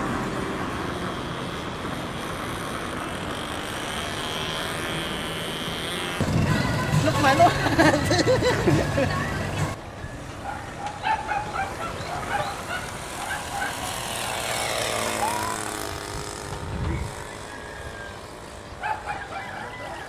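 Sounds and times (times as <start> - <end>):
rush of noise: 11.3 - 19.5.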